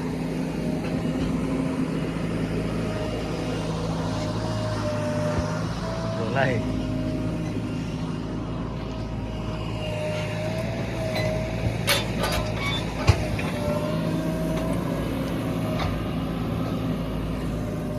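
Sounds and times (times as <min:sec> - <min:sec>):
diesel engine running: 0:00.0 - 0:17.9
wavering whine: 0:00.0 - 0:17.9
metal clanks: 0:11.2 - 0:13.6.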